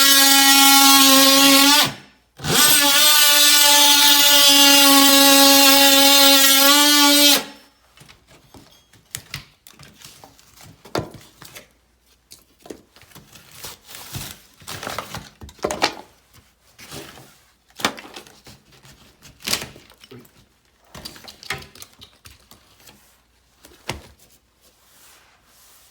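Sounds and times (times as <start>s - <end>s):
electric power tool whining: 0.0s - 7.6s
clicks and rustles of handwork: 7.9s - 24.8s.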